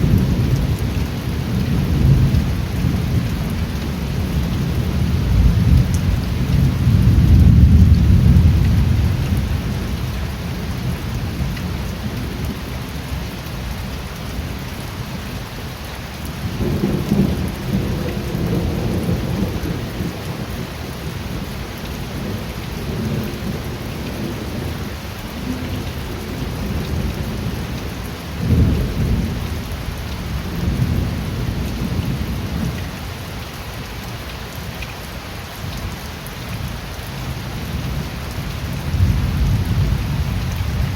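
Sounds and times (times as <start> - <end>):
steady rain: 0.0 - 40.9
rolling thunder: 4.6 - 9.7, 38.8 - 40.9.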